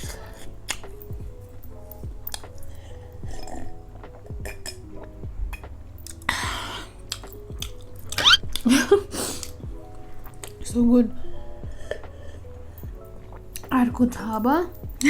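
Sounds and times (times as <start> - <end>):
chewing with wet clicks: 0.0 - 1.3, 1.9 - 6.3, 7.0 - 8.7
soft background music: 0.0 - 15.0.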